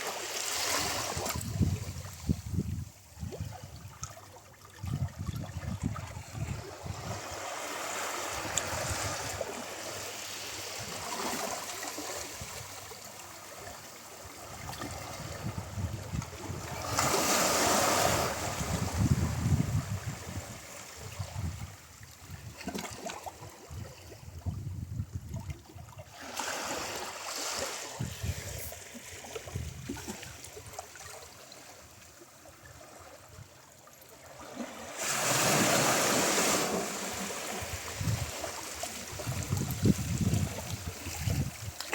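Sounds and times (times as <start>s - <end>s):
ocean waves breaking on shore: 0.0s - 2.4s, 6.0s - 21.4s, 26.0s - 33.3s, 33.9s - 41.9s.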